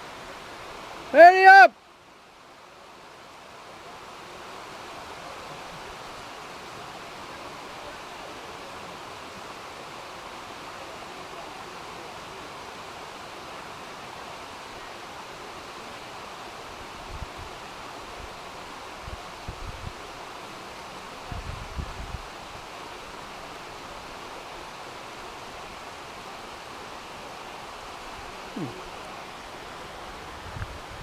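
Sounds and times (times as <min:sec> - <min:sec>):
waterfall rushing: 0:00.0 - 0:31.0.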